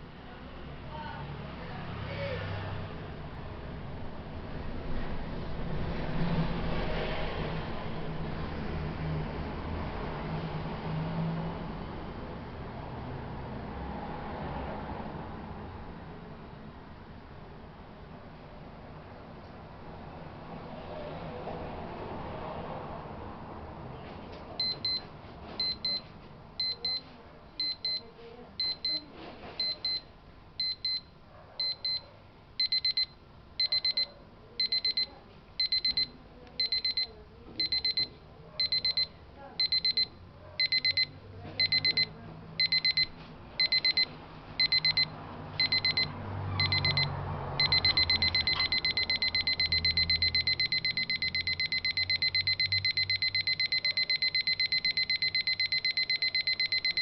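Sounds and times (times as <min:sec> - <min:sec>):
alarm clock beeping: 0:24.6 - 0:25.0, 0:25.6 - 0:26.0, 0:26.6 - 0:27.0, 0:27.6 - 0:28.0, 0:28.6 - 0:29.0, 0:29.6 - 0:30.0, 0:30.6 - 0:32.0, 0:32.6 - 0:57.0.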